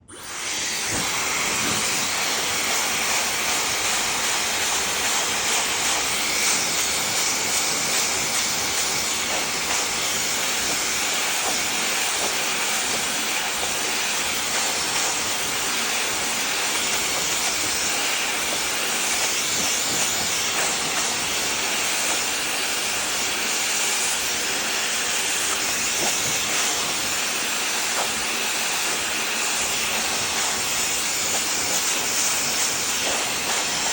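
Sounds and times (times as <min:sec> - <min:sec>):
hairdryer running: 0:00.0 - 0:33.9.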